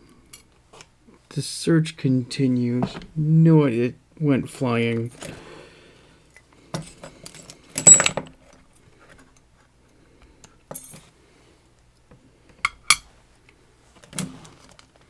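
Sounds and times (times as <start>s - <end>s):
metal parts clattering: 7.9s - 8.2s.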